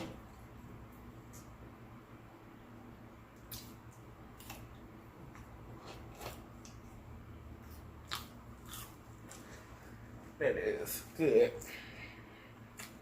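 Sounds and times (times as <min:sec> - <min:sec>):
faint low hum: 0:00.0 - 0:13.0
chewing crunchy food: 0:07.6 - 0:09.6.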